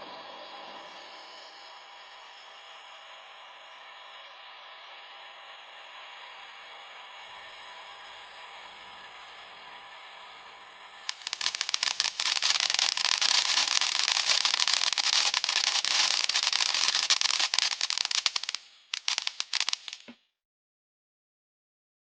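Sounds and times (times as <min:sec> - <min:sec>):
firework crackling: 0:10.8 - 0:20.2.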